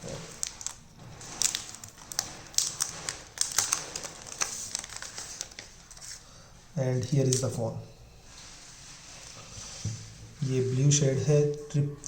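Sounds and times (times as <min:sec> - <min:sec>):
plastic wrap crinkling: 0:00.0 - 0:06.3.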